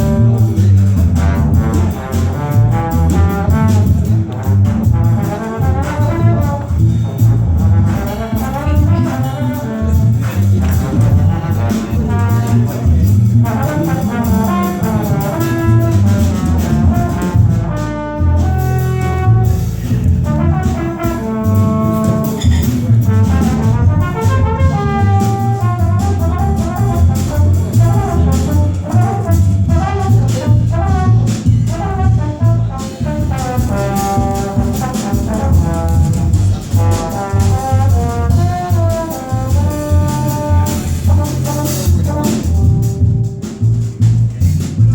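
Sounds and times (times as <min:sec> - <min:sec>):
jazz band playing: 0:00.0 - 0:44.9.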